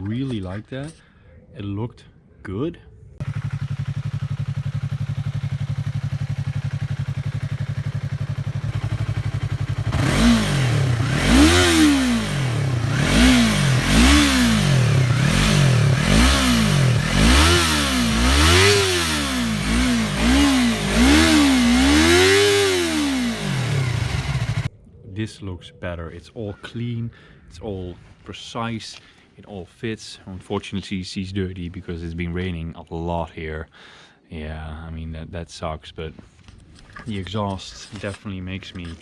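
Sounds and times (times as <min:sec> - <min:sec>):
motorcycle engine idling and revving: 0:03.2 - 0:24.7.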